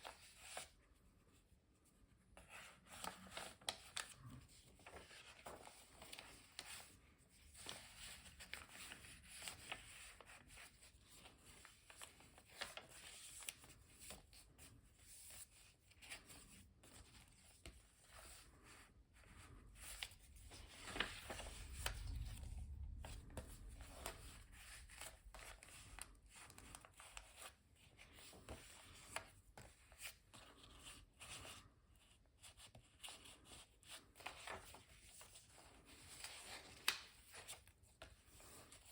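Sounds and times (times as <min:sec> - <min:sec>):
paper pages rustling: 0:02.4 - 0:38.9
brief low rumble: 0:20.3 - 0:25.5.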